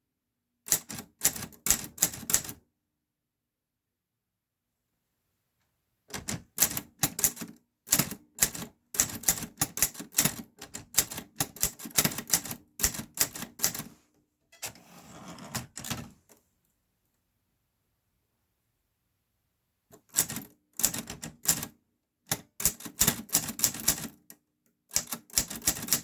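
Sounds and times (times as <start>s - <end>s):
typewriter keys striking: 25.0s - 26.0s.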